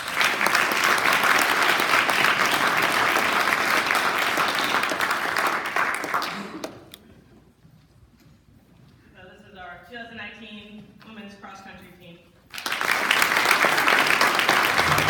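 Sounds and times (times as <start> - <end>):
audience applauding: 0.0 - 6.9, 12.5 - 15.0.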